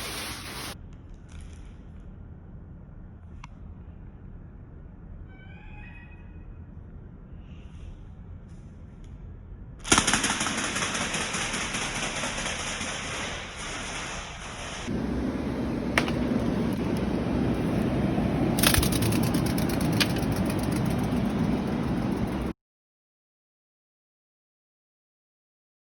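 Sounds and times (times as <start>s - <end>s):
flapping wings rattling buzz: 9.9s - 22.5s
sharp clicks: 18.2s - 22.5s.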